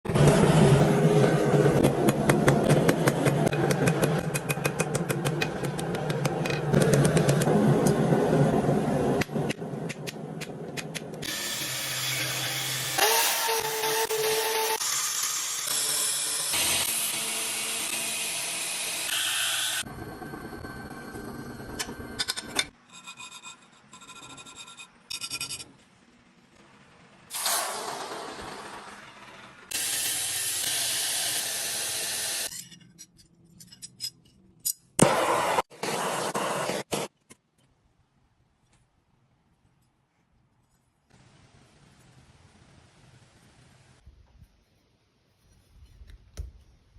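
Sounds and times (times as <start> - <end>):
machine drone: 0.1 - 22.7, 25.4 - 32.5
abrasive tool grinding metal: 11.2 - 19.9.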